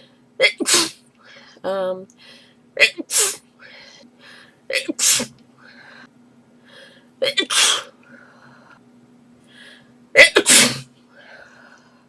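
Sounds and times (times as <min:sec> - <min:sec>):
girl sneezing: 0:00.4 - 0:01.0, 0:02.8 - 0:03.4, 0:04.8 - 0:05.3, 0:07.2 - 0:07.9, 0:10.2 - 0:10.9.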